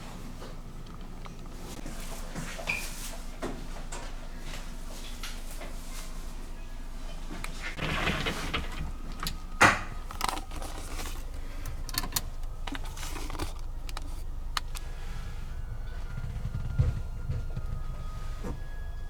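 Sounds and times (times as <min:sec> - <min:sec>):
clicks and knocks of handling: 0:07.4 - 0:14.8
ship engines humming: 0:07.7 - 0:19.0.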